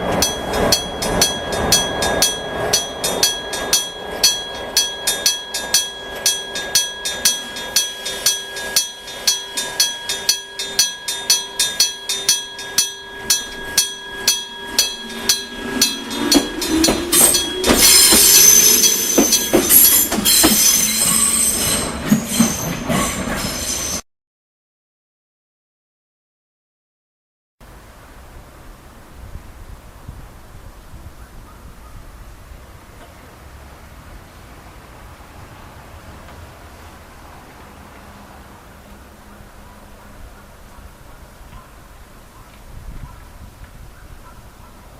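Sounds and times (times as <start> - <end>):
level crossing gong striking: 0.0 - 21.0
electric train passing: 0.0 - 24.0, 27.6 - 44.9
wheel and rail squeal: 0.0 - 24.0.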